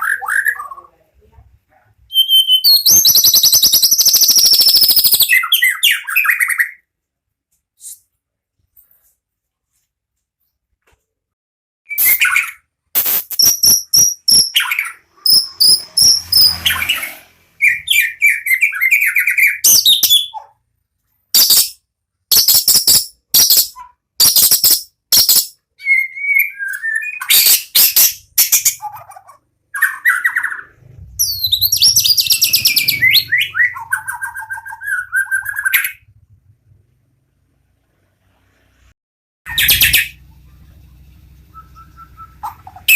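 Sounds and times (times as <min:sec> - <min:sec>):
songbird singing: 0:11.9 - 0:20.5, 0:24.6 - 0:36.0, 0:39.5 - 0:42.9.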